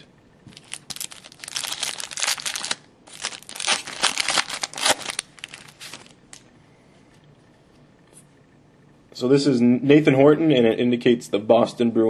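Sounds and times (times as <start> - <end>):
card pack wrapper crinkling and tearing: 0.5 - 6.4.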